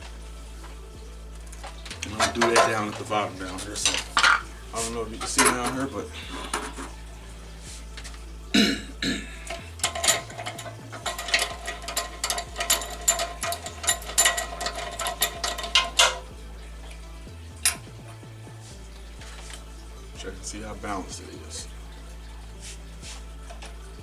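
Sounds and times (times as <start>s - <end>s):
metal blade clanking: 1.9s - 7.0s, 9.5s - 16.4s, 17.6s - 17.9s.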